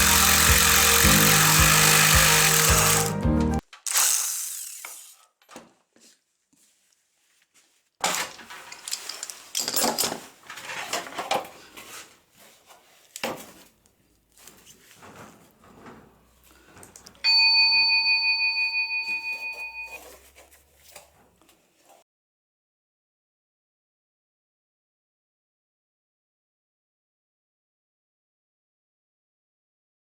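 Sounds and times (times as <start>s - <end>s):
metal clattering and scraping: 8.0s - 12.0s, 14.5s - 17.2s.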